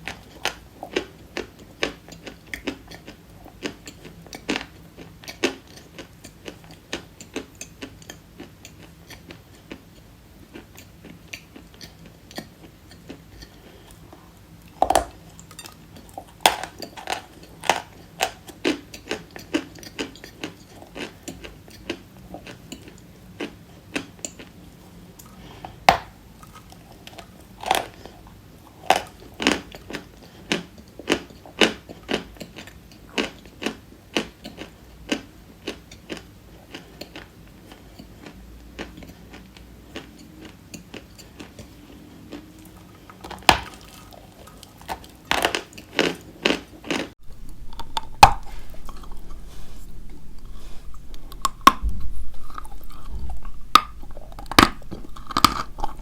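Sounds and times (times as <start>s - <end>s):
person biting and chewing chalk: 43.2s - 56.0s.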